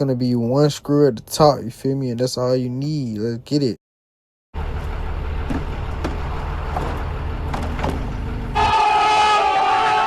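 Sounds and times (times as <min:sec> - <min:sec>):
low steady rumble: 0:04.6 - 0:08.6
vehicle horn held: 0:08.6 - 0:10.0.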